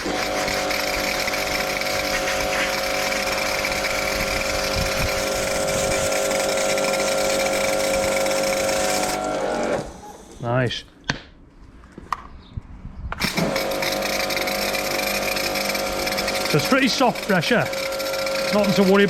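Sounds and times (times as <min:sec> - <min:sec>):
pressure washer motor hum: 0:00.0 - 0:10.4, 0:13.2 - 0:19.0
water spray hissing: 0:01.9 - 0:03.6.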